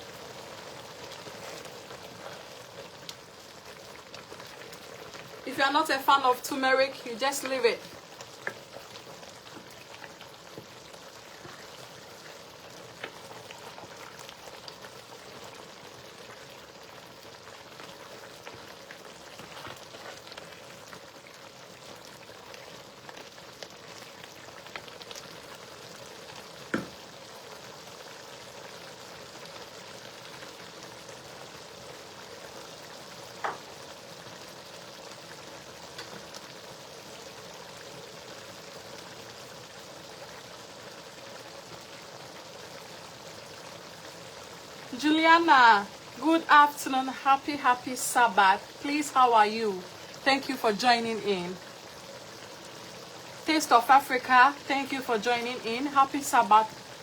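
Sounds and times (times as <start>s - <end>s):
stew sizzling in oil: 0.0s - 57.0s.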